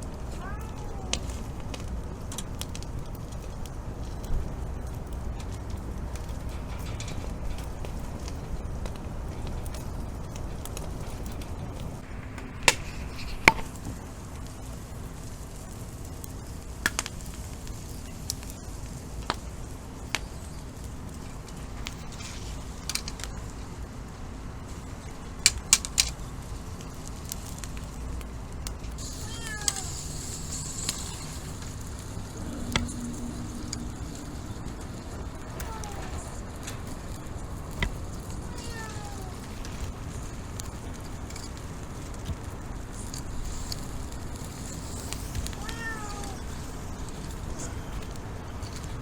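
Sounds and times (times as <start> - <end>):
cat meowing: 0.3 - 1.4, 29.0 - 30.0, 32.5 - 36.4, 38.5 - 39.6, 45.2 - 46.9.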